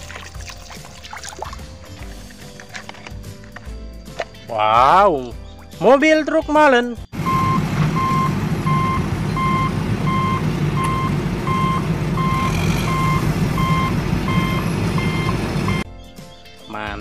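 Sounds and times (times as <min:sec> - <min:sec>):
truck engine rumble: 0:07.1 - 0:15.9
truck reversing alarm beeping: 0:07.1 - 0:15.9.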